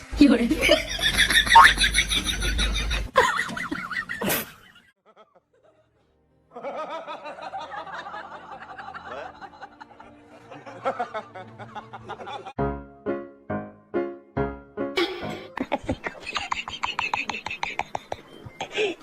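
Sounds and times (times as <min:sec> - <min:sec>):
person laughing: 0:00.6 - 0:05.9, 0:15.0 - 0:19.0
background music: 0:05.5 - 0:19.0.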